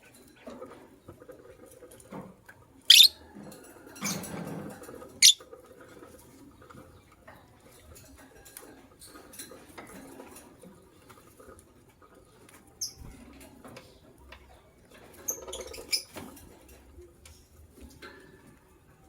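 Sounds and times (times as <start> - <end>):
birds clicking and scratching: 0.0 - 19.0
high-pitched bird chirps: 2.9 - 3.2.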